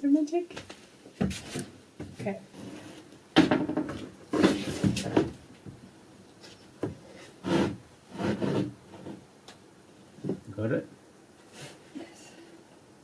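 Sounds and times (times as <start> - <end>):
wood scraping and rubbing: 2.5 - 5.4, 6.4 - 9.3.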